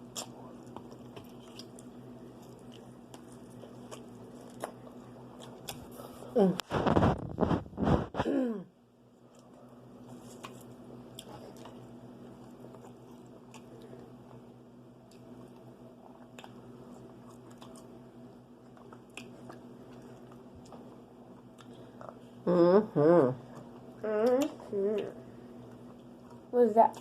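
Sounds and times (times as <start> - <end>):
people chewing crunchy food: 0.0 - 8.2, 9.2 - 22.4
steady low hum: 0.0 - 27.0.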